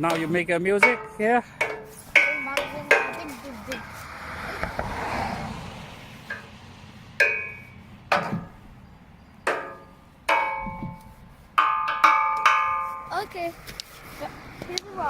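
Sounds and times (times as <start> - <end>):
stick striking resonant object: 0.0 - 3.9, 6.3 - 6.6, 7.2 - 8.5, 9.5 - 13.3.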